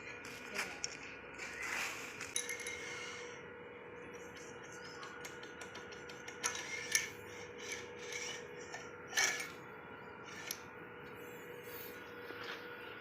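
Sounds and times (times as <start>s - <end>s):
faint steady hum: 0.0s - 13.0s
scraping and rasping on metal: 6.1s - 9.6s, 10.3s - 10.6s.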